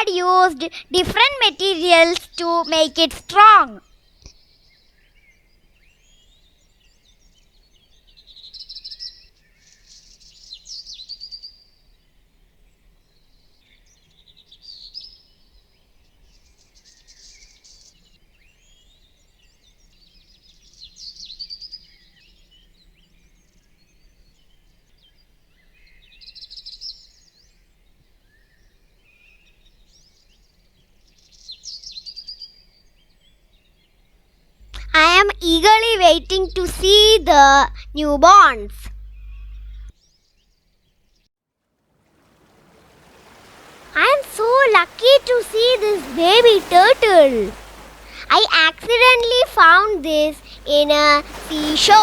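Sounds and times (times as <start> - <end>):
faint background hum: 34.6 - 39.9, 42.8 - 52.0
songbird chirping and trilling: 42.4 - 52.0.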